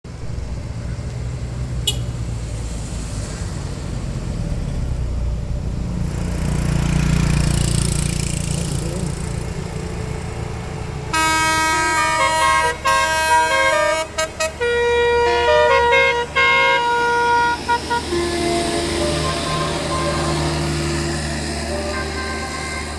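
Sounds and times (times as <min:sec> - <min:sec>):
bus engine rumble: 0:00.1 - 0:22.9
bus musical air horn tune: 0:11.1 - 0:22.9.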